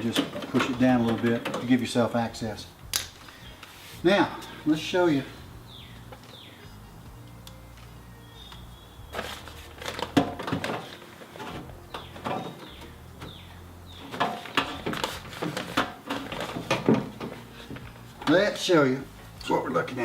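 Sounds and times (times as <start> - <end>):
objects being handled: 0.0 - 1.8, 7.5 - 19.6
low steady hum: 11.3 - 19.7.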